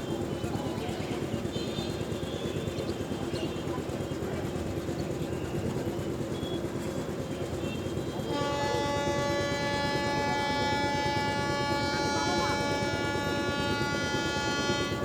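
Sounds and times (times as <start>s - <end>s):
train horn chord: 7.5s - 15.0s
train rumbling on rails: 8.2s - 15.0s.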